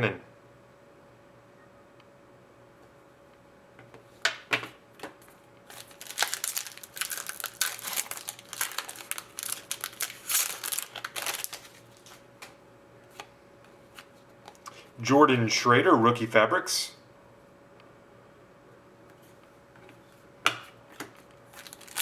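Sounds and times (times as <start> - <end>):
faint steady hum: 0.0 - 22.0
card packaging crinkling: 5.6 - 12.6, 21.1 - 22.0.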